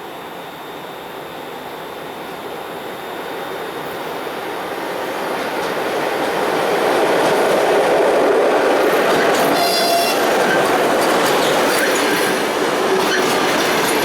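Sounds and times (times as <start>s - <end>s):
passenger train approaching on rails: 0.0s - 14.0s.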